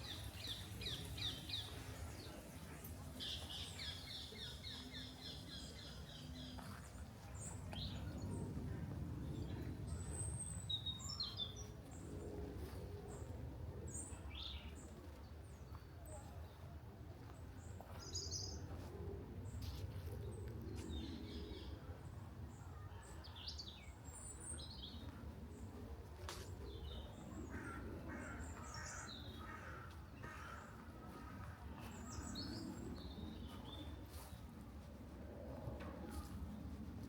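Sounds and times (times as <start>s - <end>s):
small songbirds chirping: 0.0s - 12.0s.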